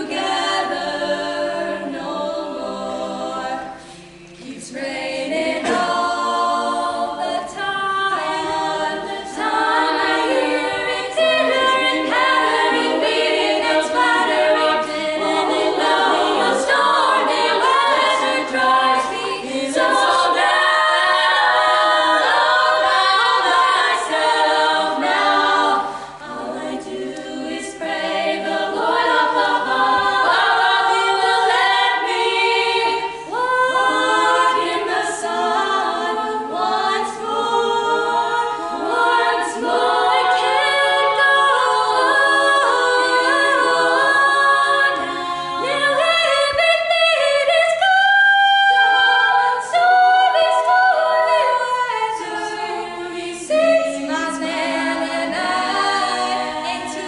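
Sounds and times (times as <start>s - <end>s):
choir singing a cappella: 0.0s - 57.0s.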